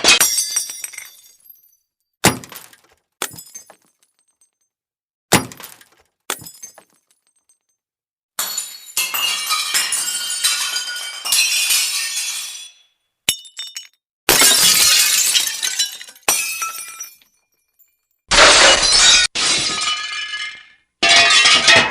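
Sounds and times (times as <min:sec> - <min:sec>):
glass smashing: 0:00.0 - 0:04.6, 0:05.3 - 0:07.7, 0:08.4 - 0:21.9
falling glass fragments: 0:08.4 - 0:12.7.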